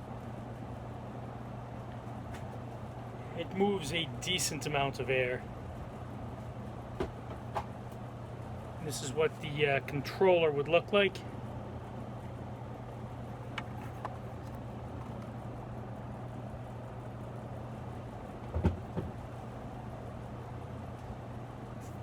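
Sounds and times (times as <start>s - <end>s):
ceiling fan air rush: 0.0s - 22.0s
thump: 18.5s - 19.1s.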